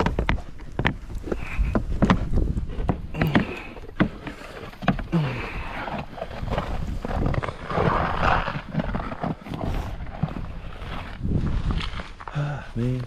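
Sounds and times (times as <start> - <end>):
wind buffeting microphone: 0.0 - 4.2, 5.0 - 12.2.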